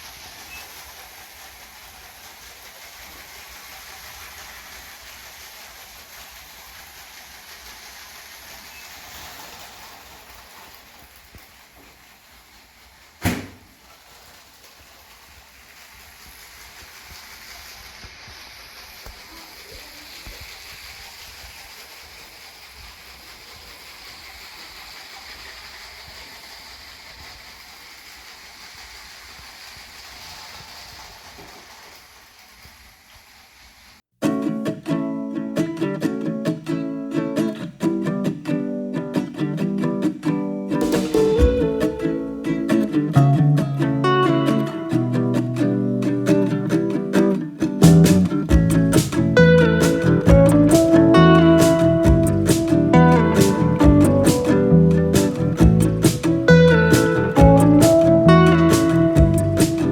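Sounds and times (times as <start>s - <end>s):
steady hiss: 0.0s - 59.9s
sharp knock: 13.2s - 13.6s, 40.8s - 42.1s, 47.8s - 59.9s
strummed acoustic guitar: 34.2s - 59.9s.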